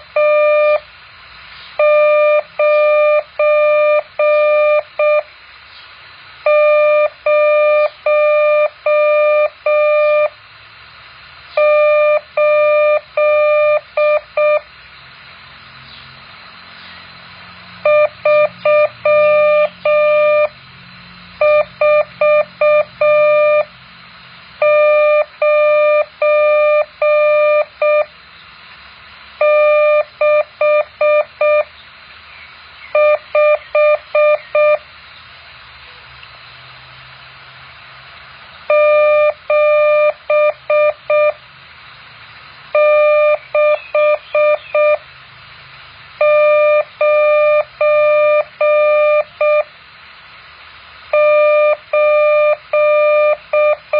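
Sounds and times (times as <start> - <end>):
morse code beeps: 0.0 - 0.8, 1.8 - 5.3, 6.4 - 10.4, 11.6 - 14.7, 17.8 - 20.6, 21.4 - 23.7, 24.6 - 28.1, 29.4 - 31.7, 32.9 - 34.8, 38.7 - 41.4, 42.8 - 45.0, 46.2 - 49.7, 51.1 - 53.9
faint steady hiss: 0.0 - 53.9.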